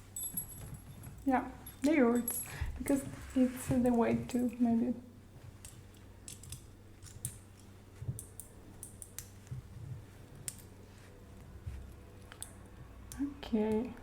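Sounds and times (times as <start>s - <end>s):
metal handcuffs clicking: 5.6s - 9.4s.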